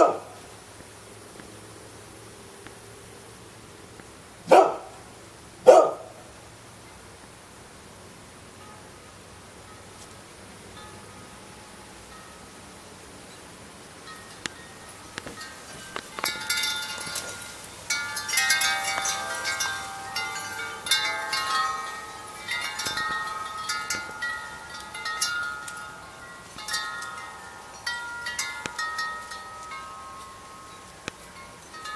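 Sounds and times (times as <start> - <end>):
chimes ringing: 10.7 - 31.9.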